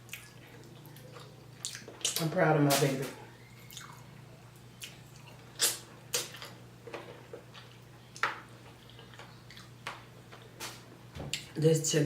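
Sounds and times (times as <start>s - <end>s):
mouth smacks and chewing: 0.0s - 2.2s, 3.6s - 4.0s, 8.8s - 9.8s.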